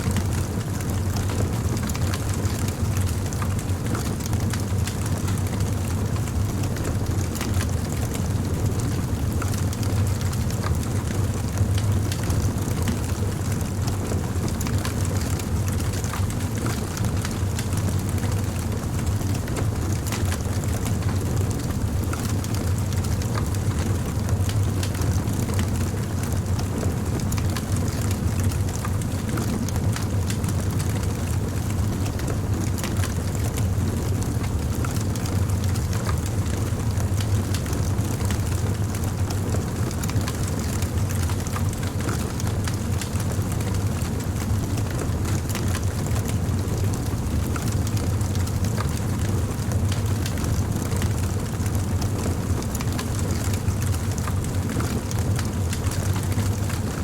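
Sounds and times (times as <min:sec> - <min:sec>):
campfire crackling and popping: 0:50.0 - 0:50.8, 0:51.4 - 0:57.0.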